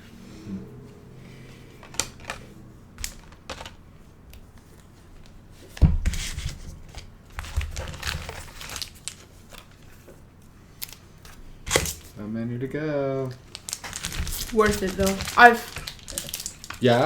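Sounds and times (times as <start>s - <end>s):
foil pack tearing and crinkling: 7.3s - 9.7s, 13.4s - 17.0s.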